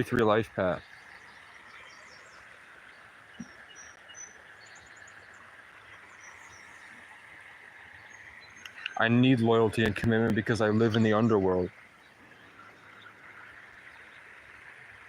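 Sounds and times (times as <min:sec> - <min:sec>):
bird chirps: 0:00.7 - 0:07.1, 0:07.9 - 0:09.2.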